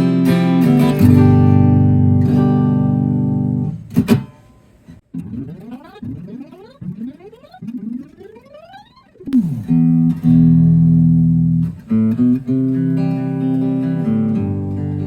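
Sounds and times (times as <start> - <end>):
electric guitar slides and chords: 9.3 - 15.0.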